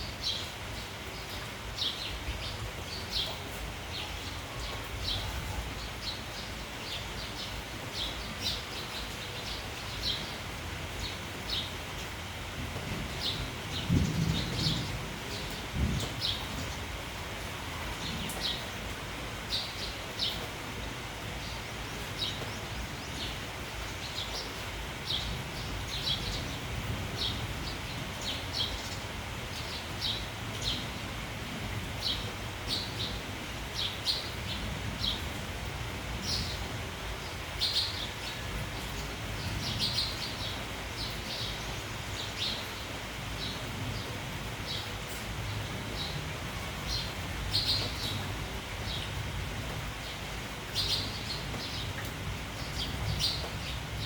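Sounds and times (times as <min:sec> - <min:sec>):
sparrows chirping: 0:00.0 - 0:17.1, 0:17.8 - 0:31.1, 0:31.9 - 0:35.4, 0:36.2 - 0:54.0
rain falling: 0:00.0 - 0:54.0.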